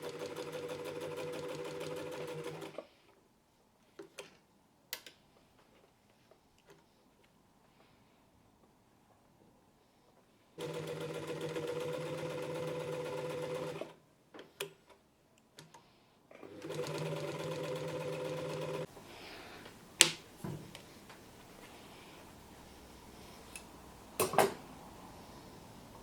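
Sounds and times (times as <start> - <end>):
sewing machine stitching: 0.0 - 2.8, 10.6 - 14.0, 16.4 - 18.9.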